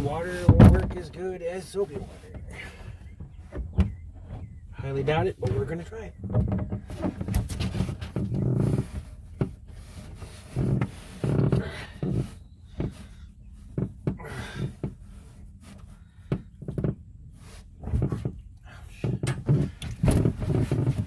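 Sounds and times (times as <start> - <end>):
pipe scraping in rubber seal: 0.0 - 21.0
knocks: 0.4 - 1.1.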